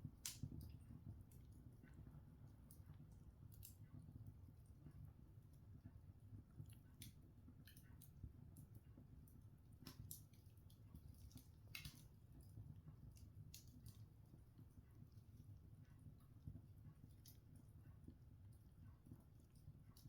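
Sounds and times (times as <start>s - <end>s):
log fire crackling: 0.0s - 20.0s.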